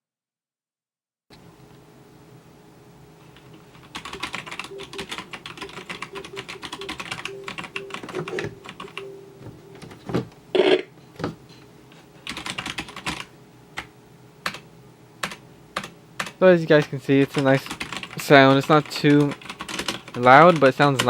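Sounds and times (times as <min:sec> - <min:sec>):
mechanical keyboard typing: 0:03.8 - 0:09.1, 0:12.3 - 0:13.3, 0:14.4 - 0:14.6, 0:15.2 - 0:16.4, 0:17.1 - 0:21.0.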